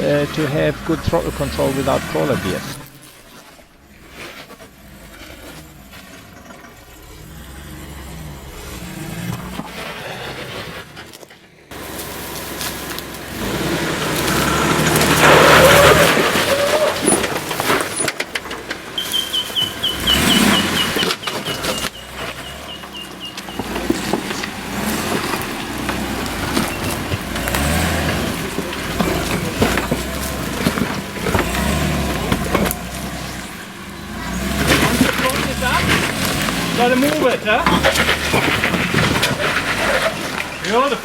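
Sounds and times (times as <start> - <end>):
off-road vehicle engine surging: 0.0 - 41.0.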